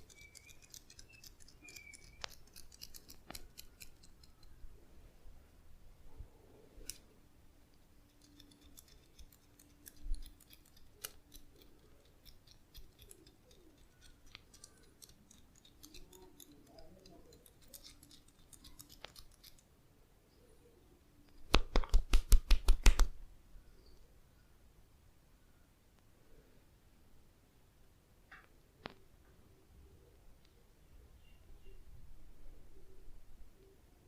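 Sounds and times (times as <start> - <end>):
hands massaging skin clicks: 0.0 - 4.6, 8.1 - 19.6, 21.4 - 23.2.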